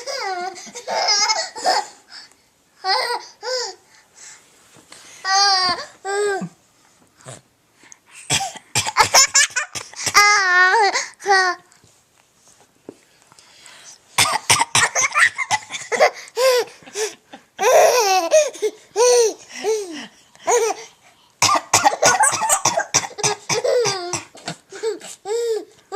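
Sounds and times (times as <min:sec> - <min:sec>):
baby laughing: 0:00.0 - 0:02.0, 0:14.8 - 0:19.9, 0:21.9 - 0:25.6
person coughing: 0:08.3 - 0:10.3, 0:14.2 - 0:16.1, 0:21.4 - 0:25.0.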